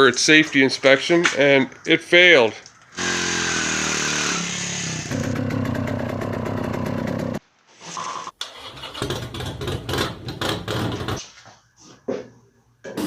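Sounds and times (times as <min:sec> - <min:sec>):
motorcycle engine running: 0:03.0 - 0:07.4.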